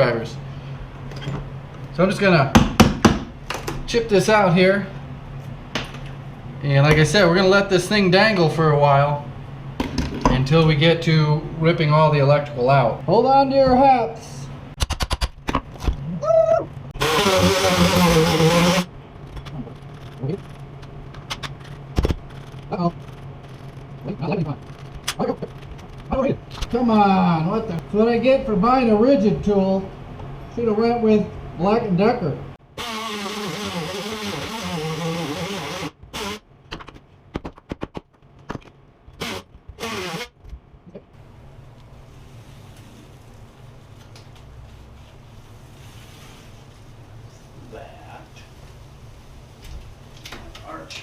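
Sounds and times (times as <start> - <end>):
power tool running: 16.9 - 18.9, 32.7 - 36.4, 39.2 - 40.3.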